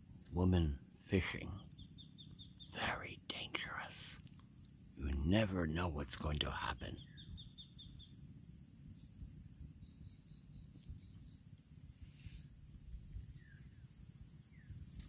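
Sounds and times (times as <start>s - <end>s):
birds chirping: 0.0s - 15.0s
high-pitched insect drone: 7.0s - 15.0s.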